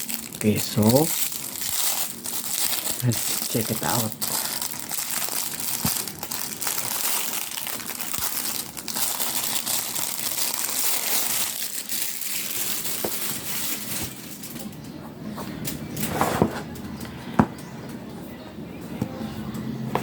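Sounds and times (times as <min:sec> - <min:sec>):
plastic packaging crinkling: 0:00.0 - 0:14.8.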